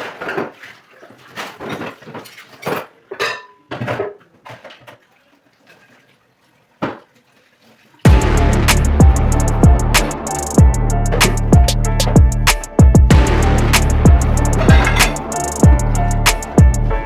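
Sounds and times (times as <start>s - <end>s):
dishes and utensils clattering: 0.0s - 5.1s, 14.6s - 15.2s
background music: 8.1s - 17.0s.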